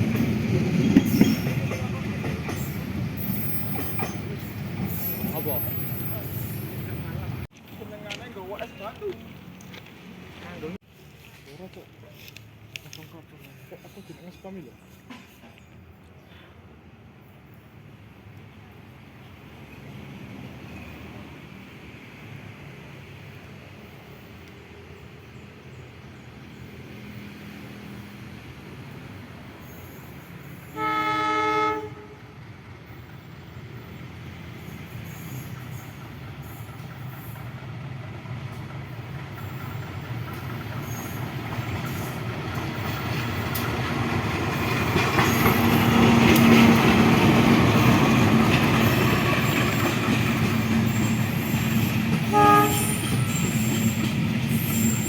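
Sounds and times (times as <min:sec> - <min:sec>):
train running noise: 0:00.0 - 0:16.1, 0:17.8 - 0:55.0
train horn: 0:30.7 - 0:32.4, 0:52.2 - 0:53.5.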